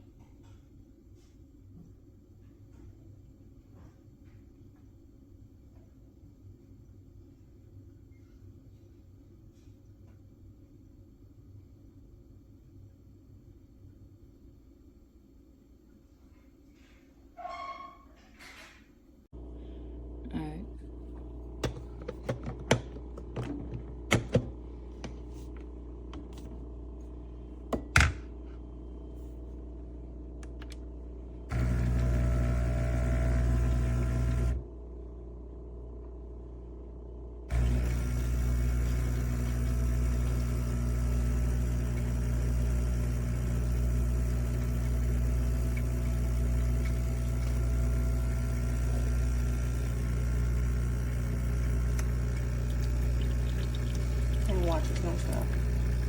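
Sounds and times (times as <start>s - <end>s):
espresso machine pump humming: 29.6s - 34.8s, 37.5s - 56.0s.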